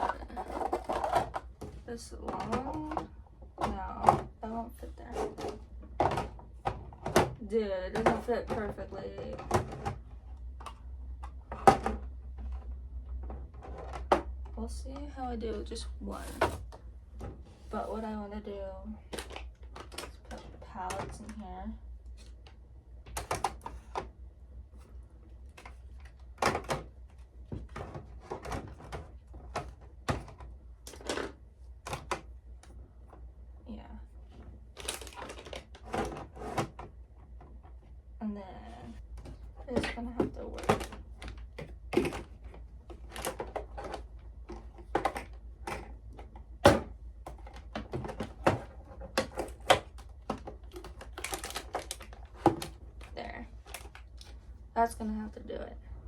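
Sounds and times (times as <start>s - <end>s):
plastic containers clattering: 0.0s - 18.1s, 19.0s - 21.4s, 24.8s - 32.3s, 34.6s - 37.9s, 38.8s - 54.4s.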